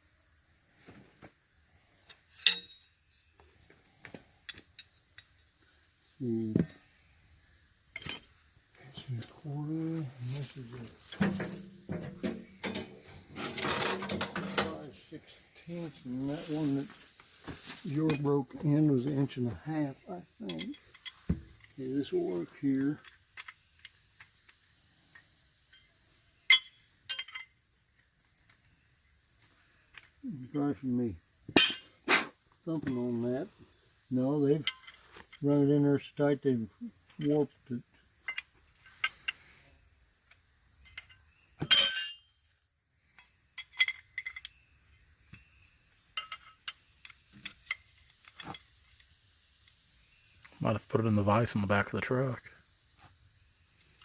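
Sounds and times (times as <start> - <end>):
steel tools clinking on metal: 2.1 - 3.3, 11.0 - 14.9, 20.4 - 21.8, 26.5 - 27.6, 31.6 - 32.0, 34.6 - 35.4, 38.2 - 39.5, 40.8 - 42.3, 43.2 - 44.6, 46.0 - 48.7
ringing metal clinks: 2.3 - 3.4, 26.5 - 27.6, 40.8 - 42.3, 43.2 - 44.6, 46.1 - 48.6
loud metal clank: 11.1 - 14.8.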